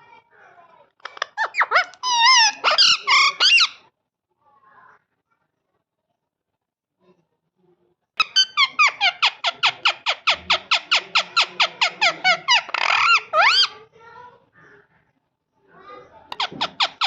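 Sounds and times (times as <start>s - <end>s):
parrot screeching: 1.0s - 3.8s, 8.2s - 13.8s, 16.4s - 17.0s
parrot squawking: 1.0s - 3.8s, 8.2s - 13.8s, 16.3s - 17.0s.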